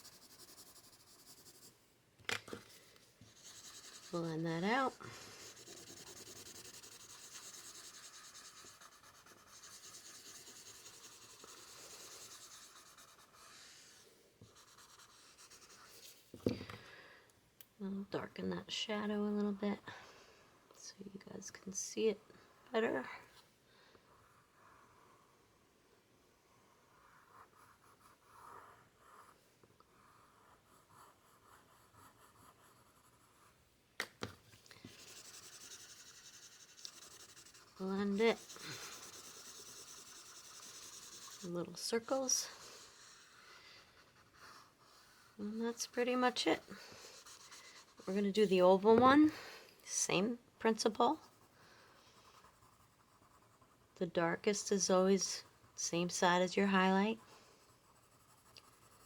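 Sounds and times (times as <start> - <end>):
blending tool rubbing on paper: 3.3 - 16.2, 34.8 - 49.0.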